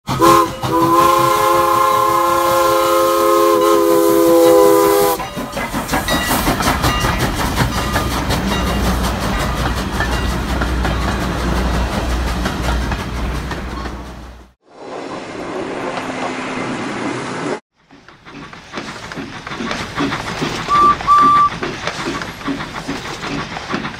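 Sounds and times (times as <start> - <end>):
train chuffing and clattering: 0.0 - 23.9
steam locomotive whistle: 0.1 - 5.3, 20.7 - 21.5.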